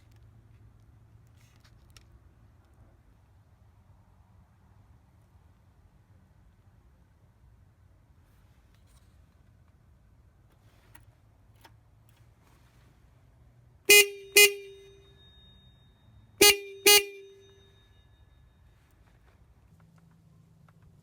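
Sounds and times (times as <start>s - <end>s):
scooter horn beeping: 13.9s - 15.3s, 16.4s - 17.9s.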